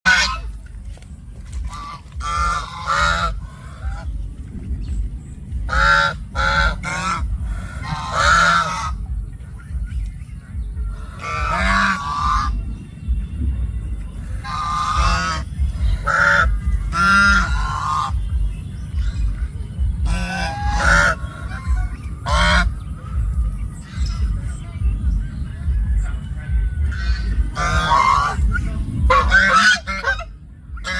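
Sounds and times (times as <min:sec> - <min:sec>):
low rumble: 0:00.1 - 0:30.9
wavering animal calls: 0:10.7 - 0:12.7, 0:14.4 - 0:25.3, 0:26.0 - 0:30.9.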